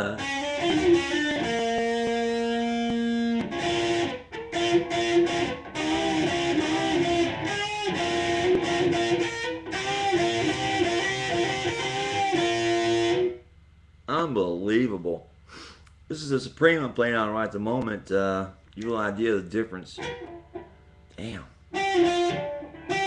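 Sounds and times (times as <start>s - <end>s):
distorted electric guitar: 0.0s - 13.4s, 20.0s - 21.1s, 21.7s - 23.0s.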